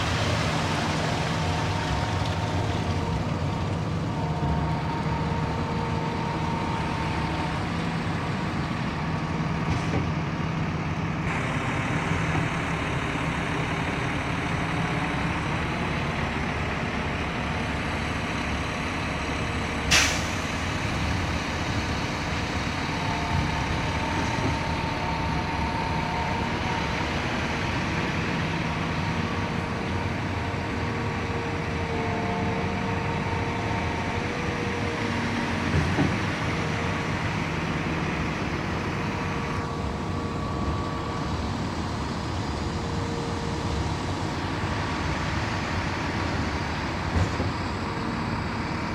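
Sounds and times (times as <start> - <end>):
concrete pump engine drone: 0.0 - 48.9
short sharp hiss: 19.9 - 20.4.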